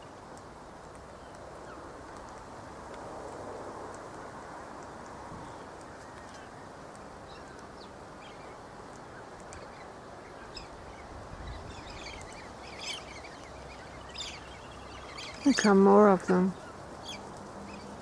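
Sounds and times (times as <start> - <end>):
background hiss: 0.0 - 18.0
galahs chattering calls: 9.6 - 18.0.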